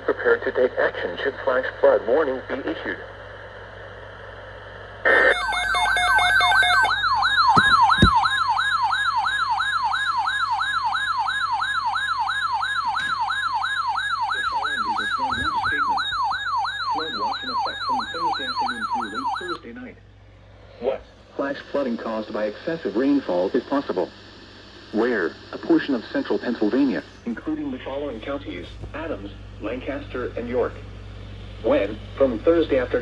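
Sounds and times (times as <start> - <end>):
electronic siren yelping: 5.0 - 19.6.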